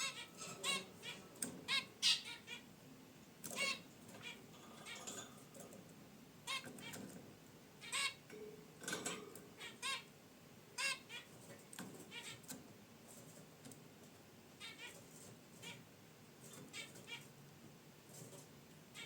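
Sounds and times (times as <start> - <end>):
finches honking calls: 0.0 - 2.7, 3.5 - 5.2, 6.4 - 7.0, 7.8 - 8.2, 9.6 - 10.1, 10.8 - 11.4, 12.0 - 12.5, 14.6 - 15.0, 16.6 - 17.3.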